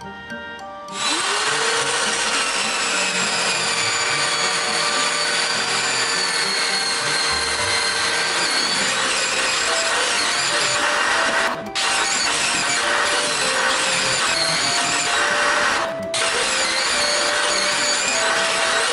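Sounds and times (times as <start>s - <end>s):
power buffer whining: 0.0s - 18.9s.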